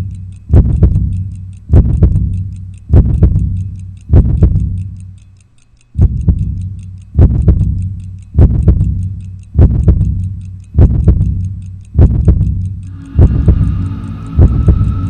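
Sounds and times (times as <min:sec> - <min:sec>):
fast clock ticking: 0:00.0 - 0:15.0
low heartbeat-like double thump: 0:00.5 - 0:01.1, 0:01.7 - 0:03.5, 0:04.1 - 0:04.7, 0:06.0 - 0:06.6, 0:07.2 - 0:07.8, 0:08.4 - 0:09.0, 0:09.6 - 0:10.1, 0:10.8 - 0:11.3, 0:12.0 - 0:12.6, 0:13.2 - 0:13.8, 0:14.4 - 0:15.0.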